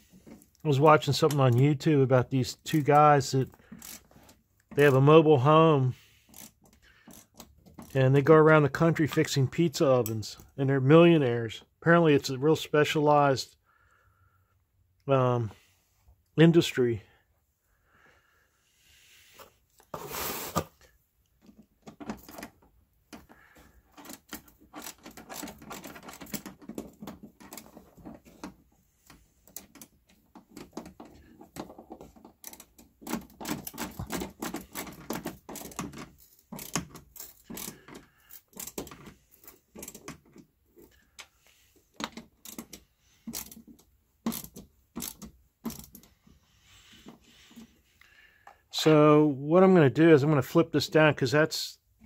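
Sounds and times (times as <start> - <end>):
metallic clicking and rattling of hinge: 23.9 - 41.3, 42.0 - 46.2.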